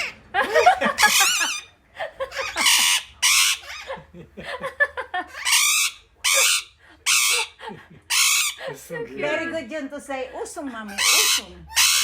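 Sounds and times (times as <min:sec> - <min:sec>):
parrot chattering calls: 0:00.0 - 0:01.7, 0:02.3 - 0:04.0, 0:05.2 - 0:08.6, 0:10.8 - 0:12.0
parrot squawking: 0:00.0 - 0:04.0, 0:05.2 - 0:08.6, 0:10.8 - 0:12.0.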